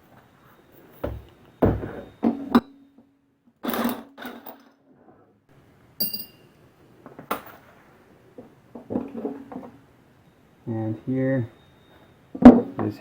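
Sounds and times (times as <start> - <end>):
metallic clanks of tools: 6.0 - 6.5.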